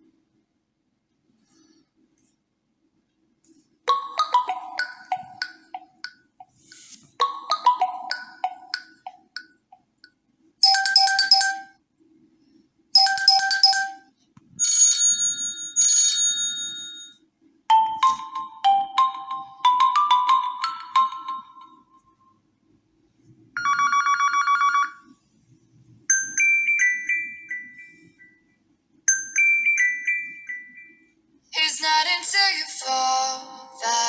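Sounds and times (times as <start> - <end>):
marimba-like tune: 3.9 - 5.9, 7.2 - 9.2, 17.7 - 21.8
bright electronic ringtone pattern: 3.9 - 6.6, 7.2 - 9.5, 10.6 - 11.8, 13.0 - 22.1, 26.1 - 31.2.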